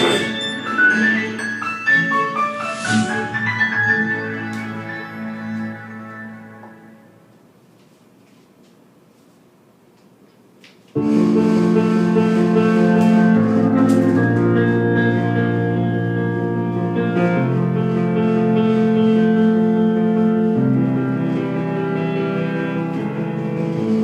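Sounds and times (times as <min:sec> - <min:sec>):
held keyboard chords: 0:11.0 - 0:24.0.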